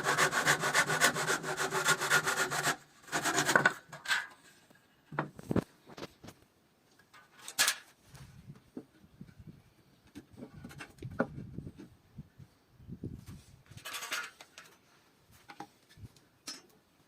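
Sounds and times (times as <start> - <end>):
sharp scrape on wood: 0.0 - 4.2.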